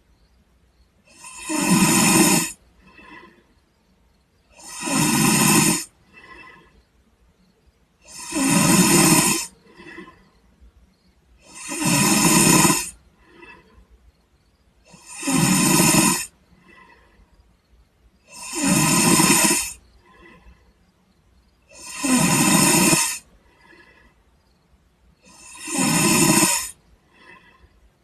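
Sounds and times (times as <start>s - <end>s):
man snoring: 1.1s - 3.4s, 4.5s - 6.8s, 8.0s - 10.2s, 11.4s - 13.8s, 14.8s - 17.2s, 18.2s - 20.6s, 21.7s - 24.1s, 25.2s - 27.7s.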